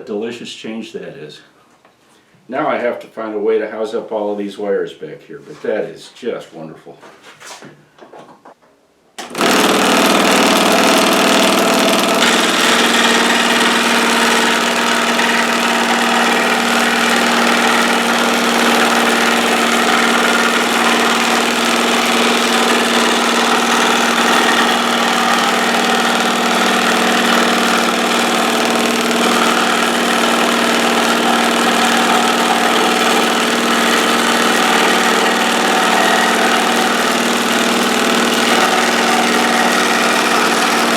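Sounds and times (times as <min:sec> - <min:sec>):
electric scroll saw running: 0:09.2 - 0:40.9.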